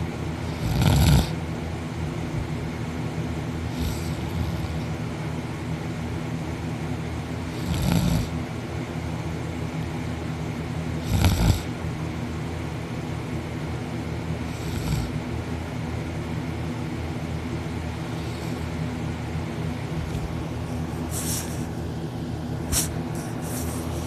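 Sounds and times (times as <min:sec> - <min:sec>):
steady low hum: 0:00.0 - 0:24.0
man snoring: 0:00.4 - 0:01.4, 0:03.6 - 0:05.0, 0:07.4 - 0:08.4, 0:11.0 - 0:11.7, 0:14.4 - 0:15.2, 0:18.0 - 0:18.8.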